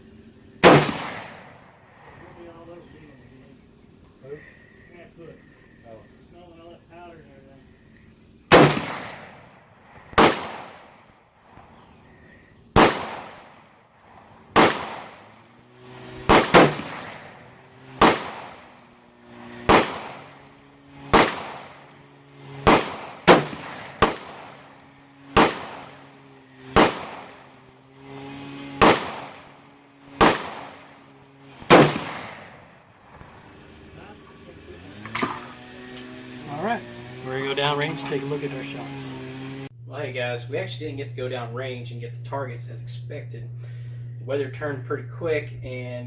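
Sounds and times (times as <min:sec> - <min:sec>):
low steady hum: 0:00.0 - 0:46.0
rifle shots echoing: 0:00.6 - 0:02.2, 0:08.5 - 0:11.7, 0:12.8 - 0:27.7, 0:28.8 - 0:33.4.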